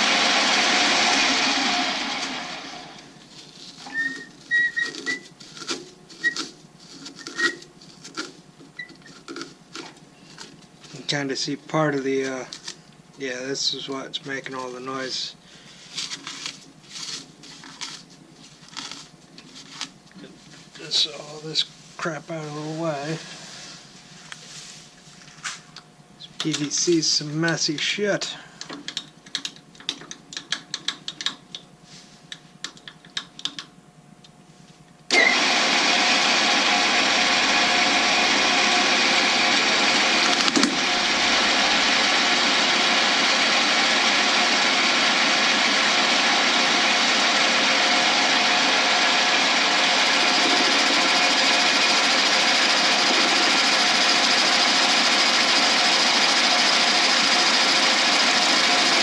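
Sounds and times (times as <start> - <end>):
lathe whirring: 0.0 - 11.3, 35.1 - 59.0.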